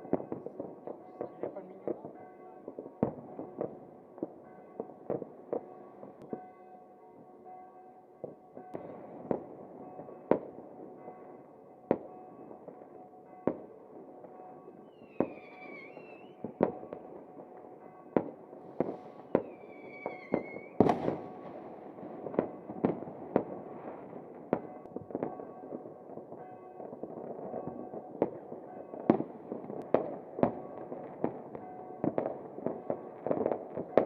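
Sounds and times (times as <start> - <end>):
fireworks bangs and cracks: 8.7 - 10.8, 14.9 - 34.0
falling firework whistle: 14.9 - 16.4, 19.4 - 21.2.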